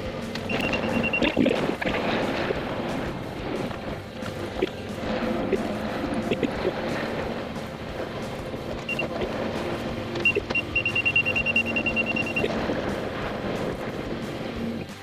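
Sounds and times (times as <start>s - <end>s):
track loader engine running: 0.0s - 15.0s
high electronic beeps: 0.4s - 1.6s, 8.8s - 9.2s, 10.2s - 12.5s.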